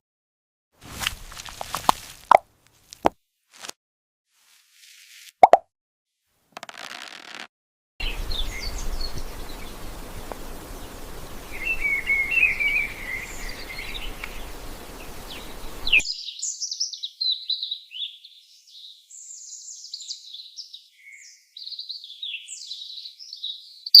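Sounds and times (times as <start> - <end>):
small birds chirping: 8.0 - 24.0
steady background hiss: 8.1 - 16.0.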